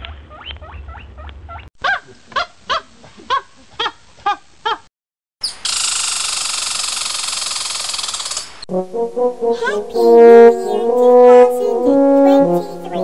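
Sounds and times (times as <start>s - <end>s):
horn-like blare: 8.7s - 13.0s.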